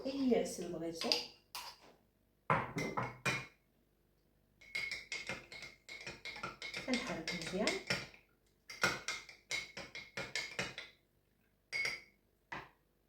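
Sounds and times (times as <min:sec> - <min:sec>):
spoon clinking against cup: 0:04.6 - 0:08.1, 0:11.7 - 0:12.2
spoon knocking on cup: 0:04.6 - 0:08.1.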